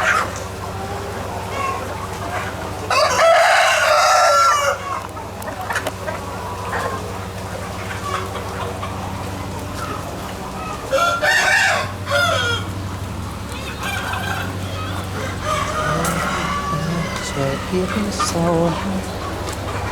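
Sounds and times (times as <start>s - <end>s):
hens clucking: 0.0s - 19.9s
rooster crowing: 2.9s - 5.0s, 10.8s - 12.8s, 13.8s - 19.9s
steady low hum: 11.9s - 19.9s.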